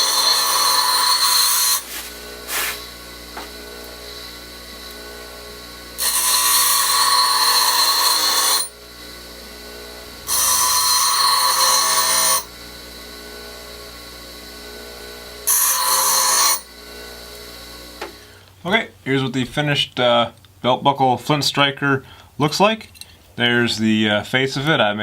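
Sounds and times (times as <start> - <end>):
metal grinding and sanding: 0.0 - 3.0, 6.0 - 8.7, 10.3 - 12.5, 15.5 - 16.7
power tool running: 0.0 - 18.6.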